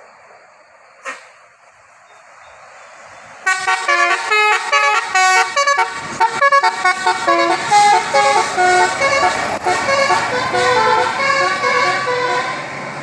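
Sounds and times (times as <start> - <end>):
musical air horn playing a tune: 3.5 - 12.6.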